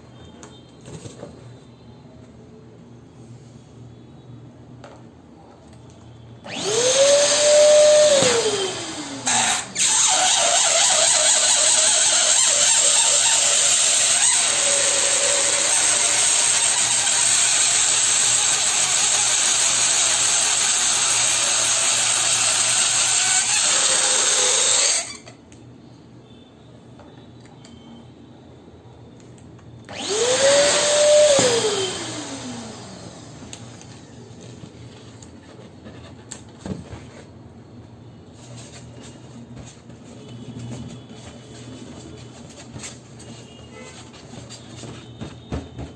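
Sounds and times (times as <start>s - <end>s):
balloon pump motor whine: 6.5s - 25.3s, 29.9s - 33.8s.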